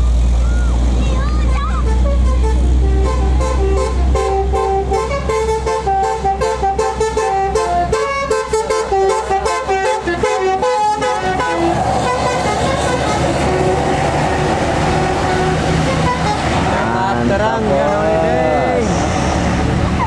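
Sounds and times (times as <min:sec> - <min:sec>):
bus engine rumble: 0:00.0 - 0:20.0
musical bus horn melody: 0:01.4 - 0:17.1
steady rushing noise: 0:10.9 - 0:20.0.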